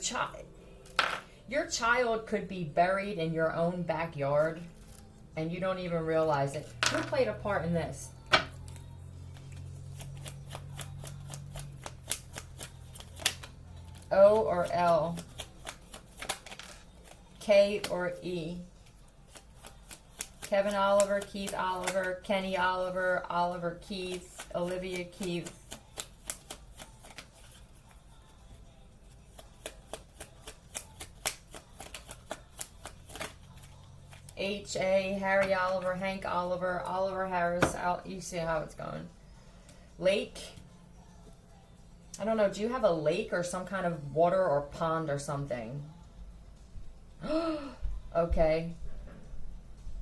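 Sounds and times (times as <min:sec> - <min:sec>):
low steady hum: 0:00.0 - 0:29.3
cards being shuffled: 0:08.2 - 0:18.0, 0:18.9 - 0:22.1, 0:23.9 - 0:28.2, 0:29.0 - 0:34.4.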